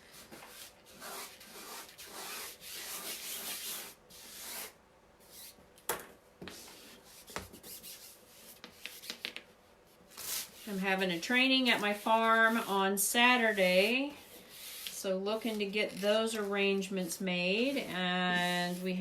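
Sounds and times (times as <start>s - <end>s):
hands rubbing transfer sheet: 10.1s - 19.0s.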